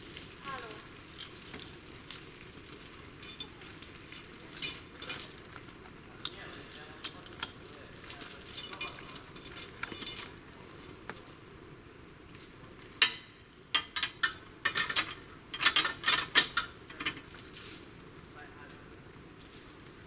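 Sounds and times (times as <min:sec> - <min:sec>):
hard objects clinking and rattling: 0:01.2 - 0:11.0, 0:13.0 - 0:17.3.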